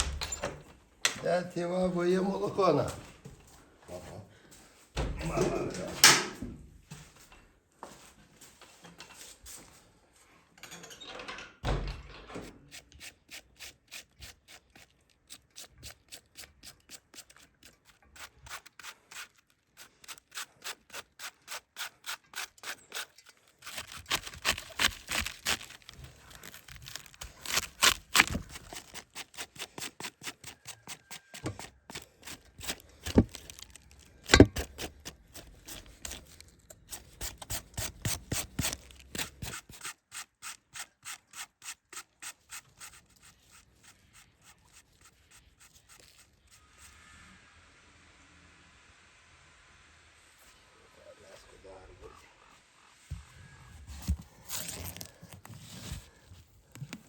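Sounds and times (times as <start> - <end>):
thumps: 32.5 - 36.2.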